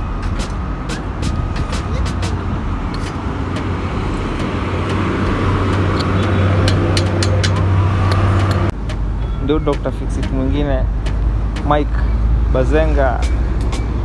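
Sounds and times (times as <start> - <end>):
vehicle engine humming: 0.0 - 14.0
sharp clicks: 0.2 - 9.1.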